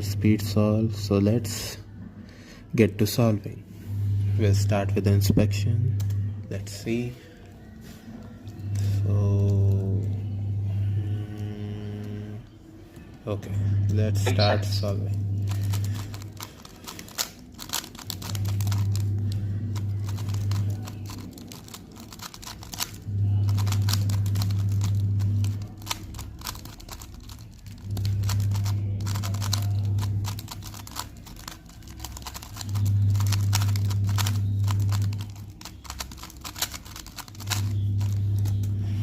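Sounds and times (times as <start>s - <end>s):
low hum: 0.0s - 2.6s, 3.5s - 39.0s
puzzle cube layers clicking: 20.0s - 38.5s.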